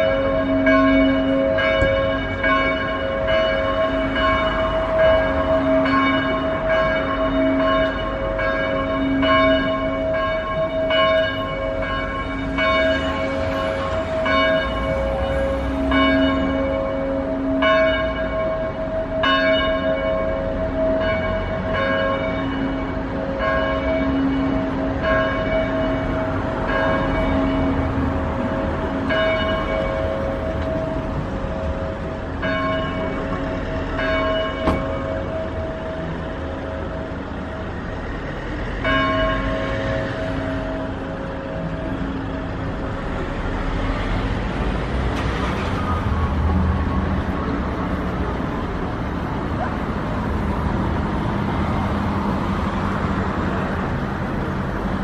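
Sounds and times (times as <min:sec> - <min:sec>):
church bells ringing: 0:00.0 - 0:51.2.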